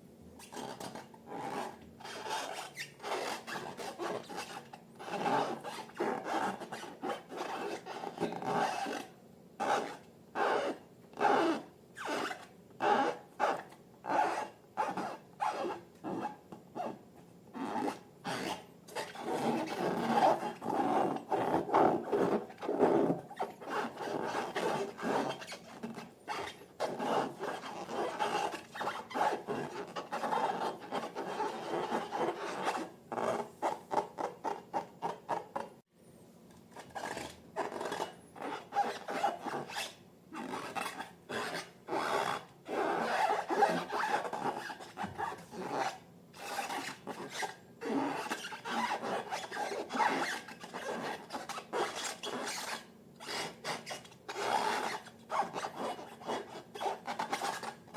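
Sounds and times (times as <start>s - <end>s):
wet slime rubbing strokes: 17.8s - 34.6s.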